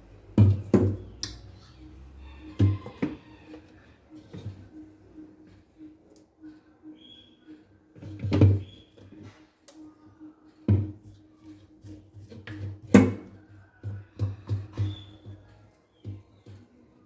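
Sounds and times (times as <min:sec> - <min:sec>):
soft background music: 0:00.0 - 0:17.0.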